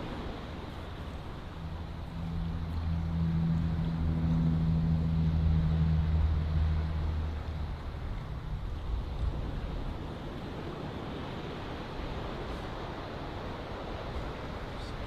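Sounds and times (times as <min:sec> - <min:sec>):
surf-like noise: 0:00.0 - 0:15.0
wind: 0:00.0 - 0:15.0
motor droning: 0:00.2 - 0:10.5.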